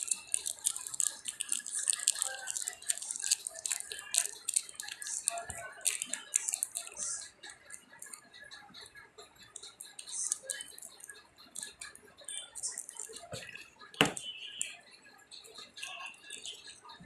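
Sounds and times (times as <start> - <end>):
light clicks and taps: 9.5 - 14.7.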